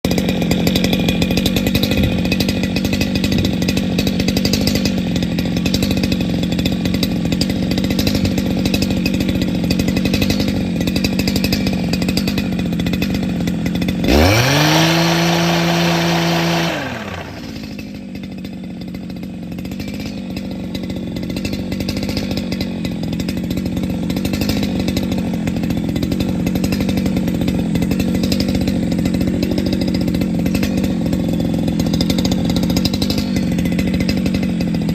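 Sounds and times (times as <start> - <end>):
small motor whining: 12.5 - 18.1.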